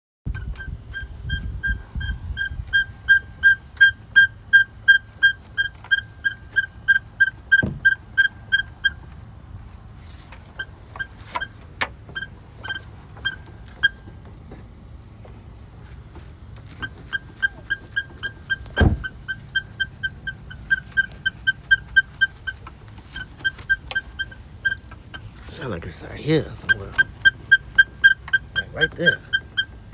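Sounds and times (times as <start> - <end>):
high-pitched squeaking chirps: 0.3 - 9.1, 10.5 - 14.2, 16.8 - 29.9
low steady rumble: 0.3 - 29.9
single thumps: 7.5 - 8.0.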